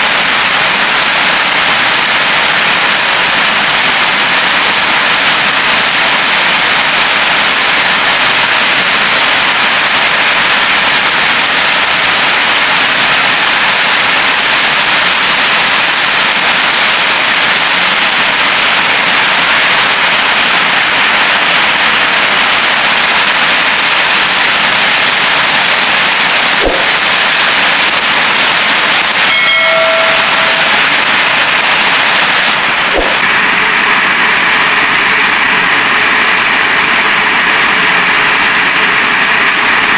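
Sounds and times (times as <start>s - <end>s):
heavy rain falling: 0.0s - 39.9s
brief pitched sound: 26.6s - 27.1s, 29.2s - 30.9s, 32.5s - 33.2s.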